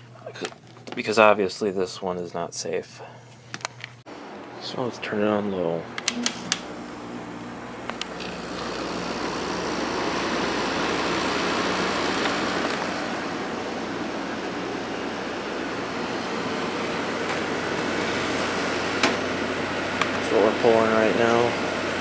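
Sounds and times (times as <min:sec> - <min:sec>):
air conditioner fan rushing: 0:00.0 - 0:22.0
control clicks: 0:06.0 - 0:06.7, 0:07.8 - 0:08.7.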